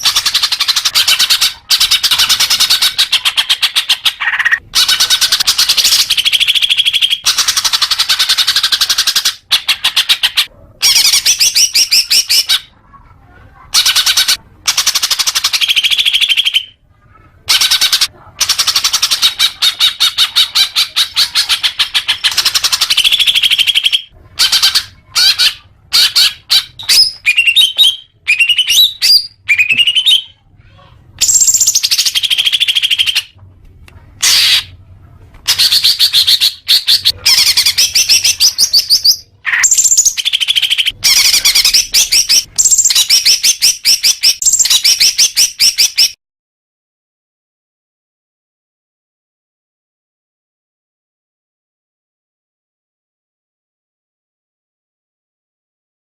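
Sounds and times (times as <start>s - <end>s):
bird singing fast trills: 35.5s - 46.2s.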